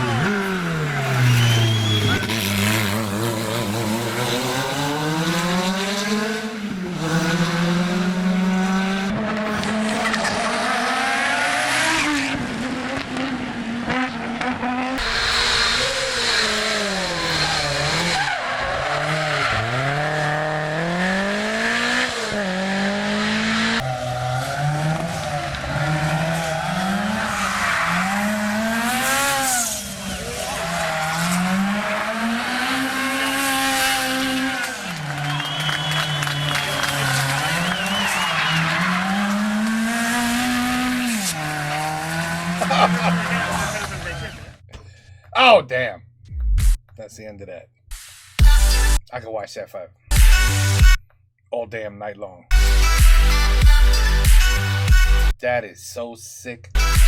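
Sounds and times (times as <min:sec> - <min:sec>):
tyre squeal: 0:00.0 - 0:03.6, 0:15.0 - 0:20.5, 0:23.8 - 0:41.5
rally car engines revving: 0:00.0 - 0:44.9, 0:52.5 - 0:55.4.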